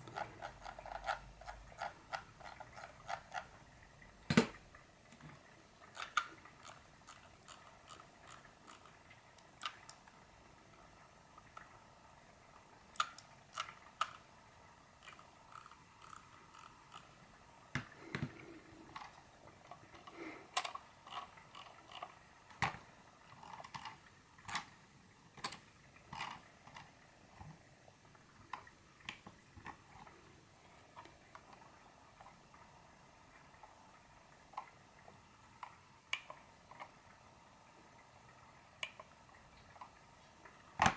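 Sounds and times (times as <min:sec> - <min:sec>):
mouse scroll wheel clicks: 0:06.0 - 0:09.0, 0:15.0 - 0:17.1.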